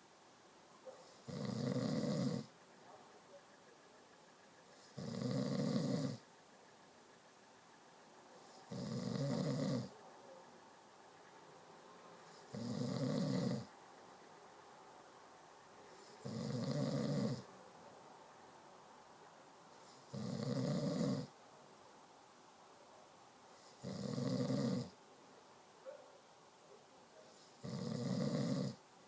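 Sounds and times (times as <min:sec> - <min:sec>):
person snoring: 0:01.3 - 0:02.5, 0:05.0 - 0:06.2, 0:08.7 - 0:09.9, 0:12.5 - 0:13.7, 0:16.2 - 0:17.4, 0:20.1 - 0:21.3, 0:23.8 - 0:24.9, 0:27.6 - 0:28.8.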